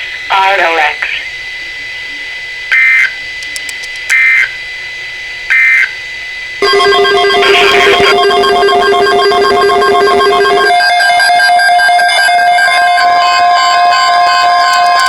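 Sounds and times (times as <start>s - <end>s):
shrill digital data squawks: 6.6s - 15.0s
steady pitched tone: 6.6s - 15.0s.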